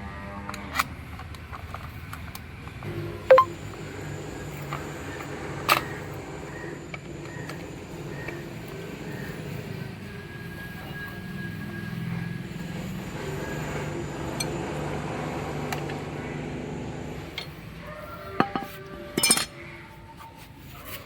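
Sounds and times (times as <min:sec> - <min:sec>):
ringing metal clinks: 0:18.4 - 0:19.6.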